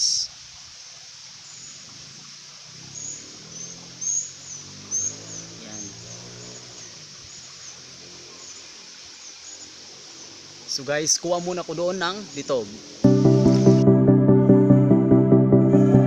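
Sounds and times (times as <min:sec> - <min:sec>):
steady outdoor hiss: 0:00.0 - 0:14.4
small bird chirping: 0:01.4 - 0:10.8.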